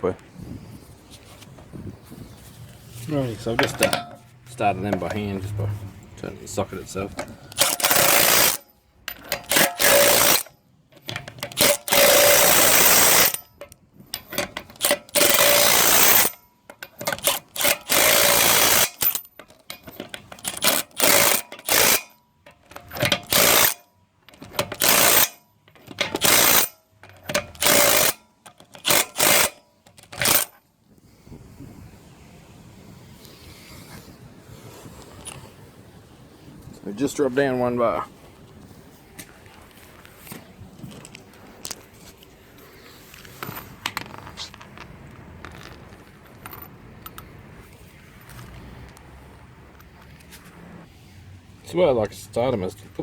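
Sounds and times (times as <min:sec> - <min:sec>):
impact wrench rattling: 0:03.5 - 0:05.3, 0:07.1 - 0:30.6.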